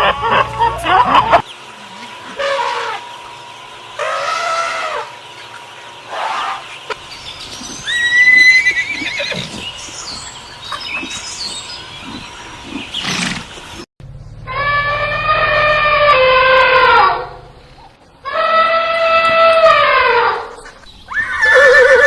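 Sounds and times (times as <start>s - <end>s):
horse neighing and whinnying: 7.9s - 9.6s, 21.2s - 22.0s.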